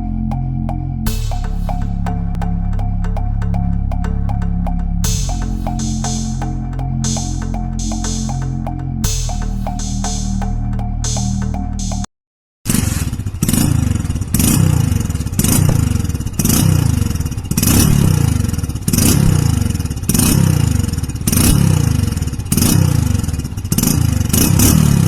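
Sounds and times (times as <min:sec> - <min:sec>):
exhaust crackling: 0:01.1 - 0:12.1
motorcycle engine revving: 0:12.7 - 0:25.0.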